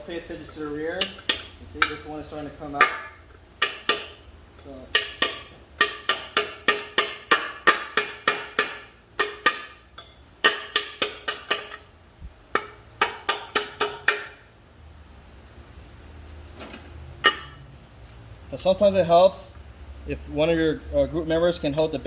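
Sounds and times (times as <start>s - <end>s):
hammer striking metal punch: 1.0s - 2.1s, 2.7s - 4.2s, 4.9s - 11.8s, 12.6s - 14.4s.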